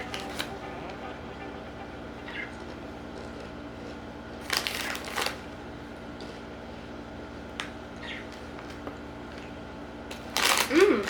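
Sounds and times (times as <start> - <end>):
faint steady hum: 0.0 - 11.0
corn chip crunching: 2.3 - 6.5, 8.6 - 11.0.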